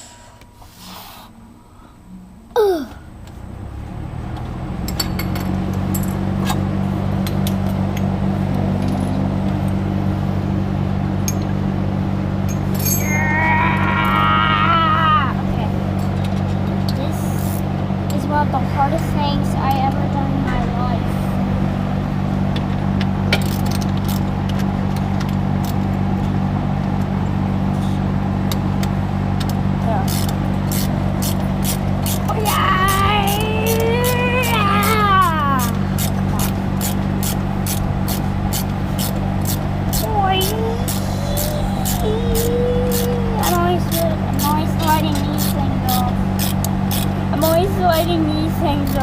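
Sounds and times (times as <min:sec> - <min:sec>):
steady low hum: 0:00.0 - 0:49.0
metal parts clinking: 0:12.5 - 0:13.2.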